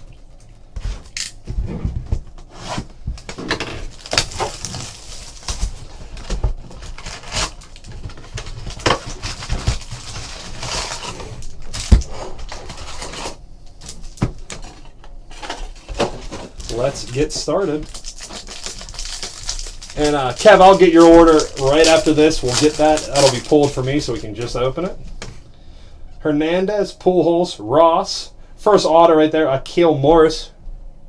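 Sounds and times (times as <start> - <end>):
cardboard handling: 0.8 - 25.4
plastic wrap crinkling and tearing: 3.2 - 24.8.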